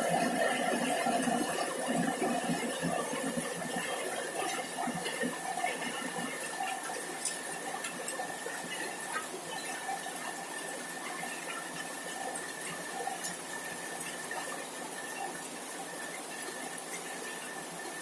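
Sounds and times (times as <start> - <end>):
rain on a metal roof: 0.0 - 18.0.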